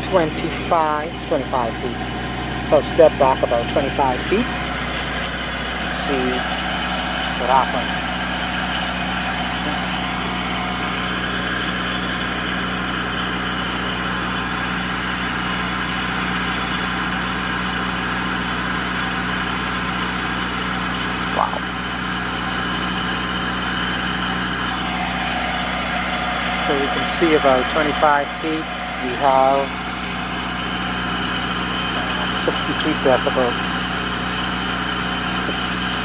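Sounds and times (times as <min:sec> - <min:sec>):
diesel generator humming: 0:00.0 - 0:36.0.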